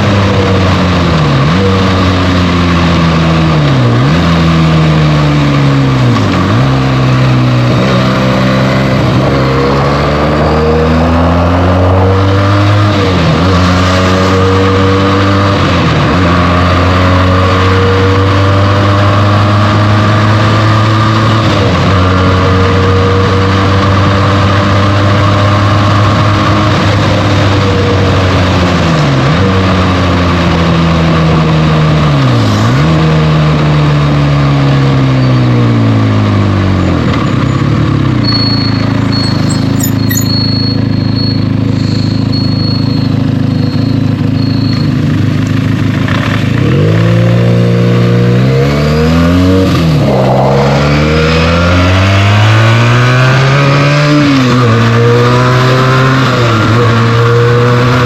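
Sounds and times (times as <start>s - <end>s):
motorcycle engine accelerating: 0.0s - 58.0s
high beeping: 38.2s - 45.0s.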